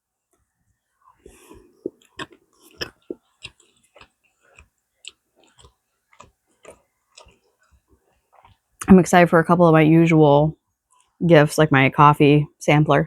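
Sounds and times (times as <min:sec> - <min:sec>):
person chewing crunchy food: 0:00.7 - 0:08.8
mouth clicks: 0:01.2 - 0:07.8.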